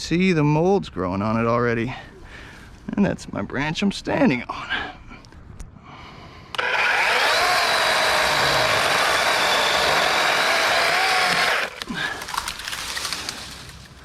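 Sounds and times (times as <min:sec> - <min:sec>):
electric chainsaw cutting branch: 0:06.5 - 0:11.9.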